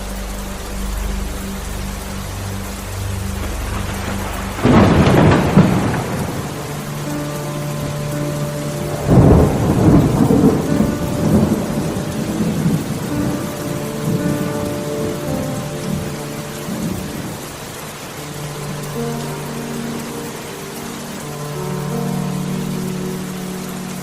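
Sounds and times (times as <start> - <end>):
steady rain: 0.0 - 24.0
thunder rolling: 3.3 - 17.6.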